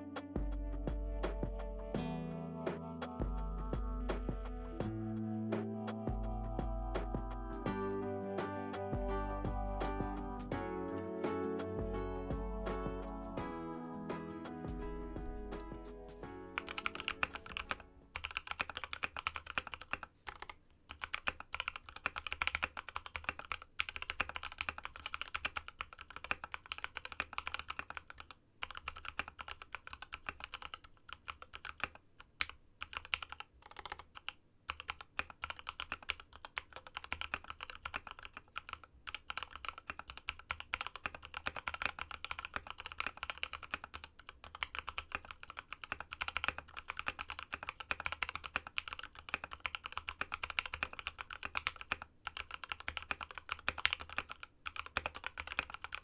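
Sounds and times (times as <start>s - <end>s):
fast typing on mechanical keyboard: 16.6s - 56.0s.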